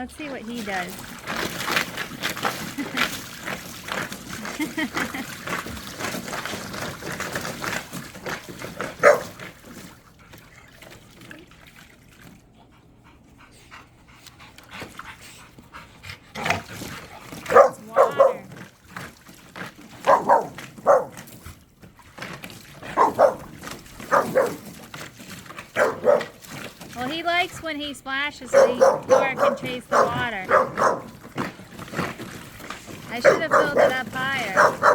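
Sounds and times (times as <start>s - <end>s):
dogs barking: 8.9s - 9.4s, 17.5s - 18.5s, 20.0s - 21.3s, 22.8s - 24.7s, 25.7s - 26.4s, 28.5s - 31.4s, 33.1s - 34.9s.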